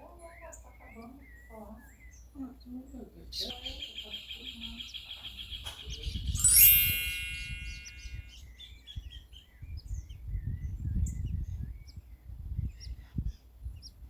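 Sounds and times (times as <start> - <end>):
high bird chirps: 3.4 - 12.0
ringing bell strike: 6.4 - 8.3
low rumble on microphone: 9.0 - 14.0.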